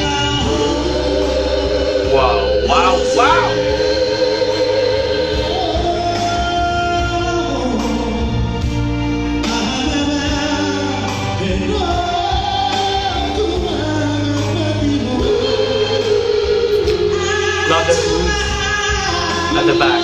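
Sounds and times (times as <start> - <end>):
band backing: 0.0 - 20.0
vocal trio singing in harmony: 0.0 - 20.0.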